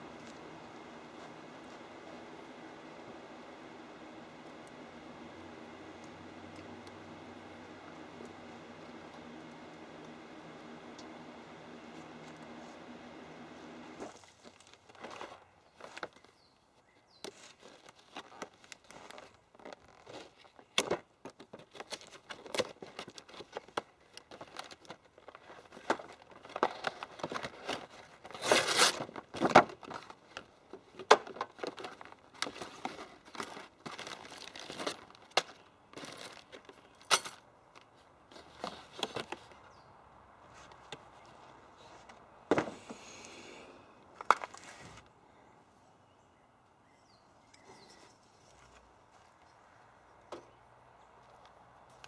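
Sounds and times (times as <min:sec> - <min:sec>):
tools and parts clicking and knocking: 0:29.7 - 0:39.5.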